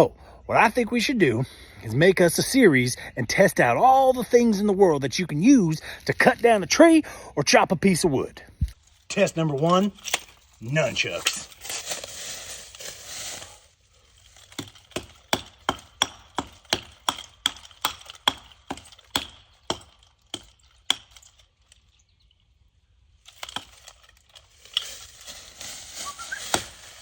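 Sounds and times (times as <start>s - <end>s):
nunchucks striking tree trunk: 9.6s - 12.2s, 14.2s - 21.8s, 23.2s - 27.0s.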